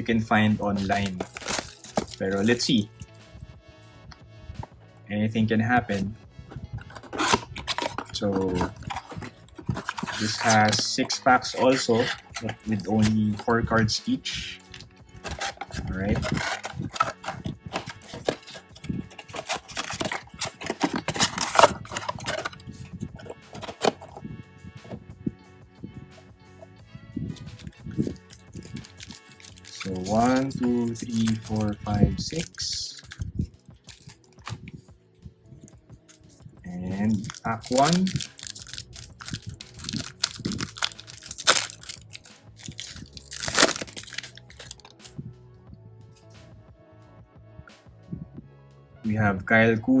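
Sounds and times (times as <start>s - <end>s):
sharp crackle of packaging: 0.0s - 2.6s, 6.7s - 13.4s, 14.5s - 24.2s, 27.4s - 34.9s, 36.1s - 45.1s
packaging rustling and crinkling: 0.0s - 2.9s, 6.5s - 25.0s, 27.3s - 34.9s, 35.5s - 45.2s
wrapper tearing rips: 0.6s - 2.6s, 6.7s - 13.4s, 14.6s - 24.2s, 27.4s - 34.9s, 36.9s - 45.1s.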